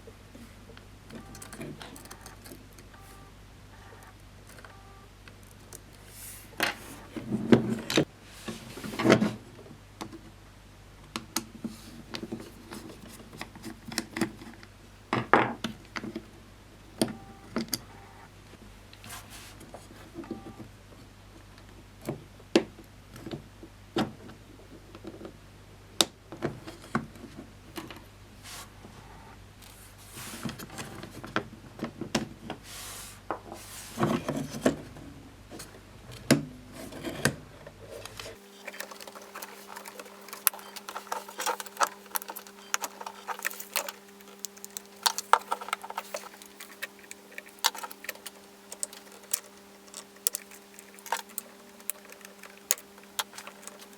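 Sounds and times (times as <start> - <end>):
plastic and metal parts handled: 35.5 - 53.9.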